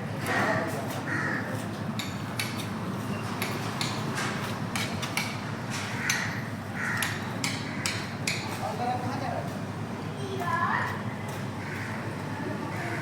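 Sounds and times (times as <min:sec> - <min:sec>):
steady background noise: 0:00.0 - 0:13.0.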